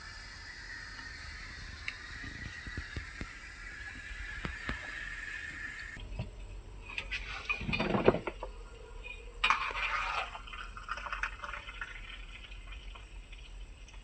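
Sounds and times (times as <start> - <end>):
kitchenware clinking: 6.9 - 8.4
kitchenware clattering: 7.0 - 8.4.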